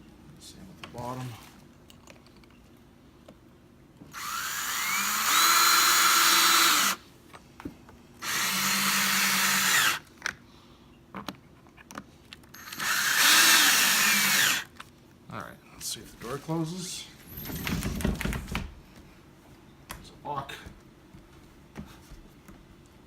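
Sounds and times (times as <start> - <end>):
power drill whining: 4.1 - 7.0, 8.2 - 10.0, 12.5 - 14.7.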